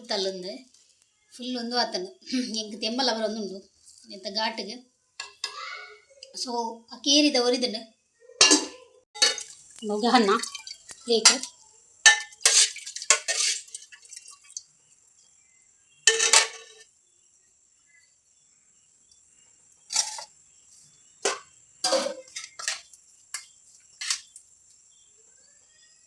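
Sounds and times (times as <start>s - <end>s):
dishes and utensils clinking: 5.2s - 5.6s, 8.4s - 14.5s, 16.1s - 16.9s, 19.9s - 20.3s, 21.2s - 24.3s.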